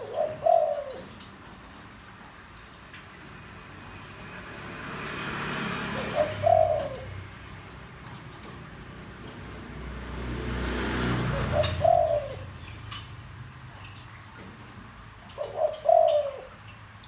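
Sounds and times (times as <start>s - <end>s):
dove cooing: 0.0s - 1.4s, 5.8s - 7.7s, 10.9s - 13.1s, 15.2s - 16.6s.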